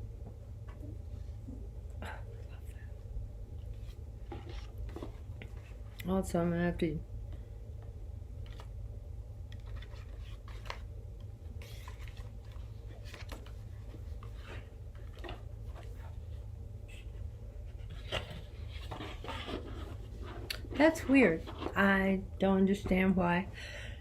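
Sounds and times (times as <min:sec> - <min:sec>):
steady low hum: 0:00.0 - 0:24.0
paper and cardboard handled: 0:03.7 - 0:05.9, 0:09.5 - 0:10.9, 0:11.5 - 0:22.0
soft scratches and rubs: 0:11.6 - 0:21.9.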